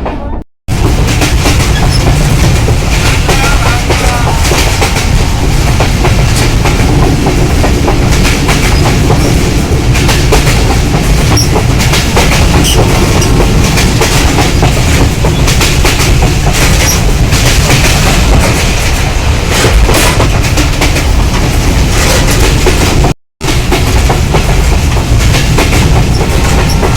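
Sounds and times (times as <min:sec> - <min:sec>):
train rumbling: 0:00.0 - 0:26.9.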